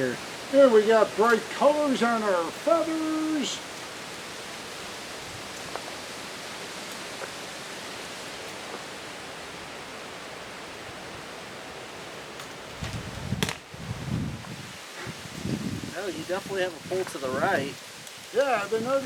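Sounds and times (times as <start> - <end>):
wind hiss: 0.0 - 19.0
wind buffeting microphone: 2.7 - 7.6, 12.6 - 19.0.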